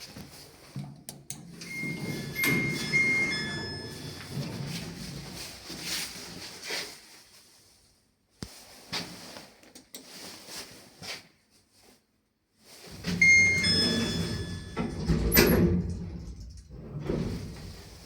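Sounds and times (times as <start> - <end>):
lift rumbling and squealing: 1.6 - 5.7, 12.9 - 18.0.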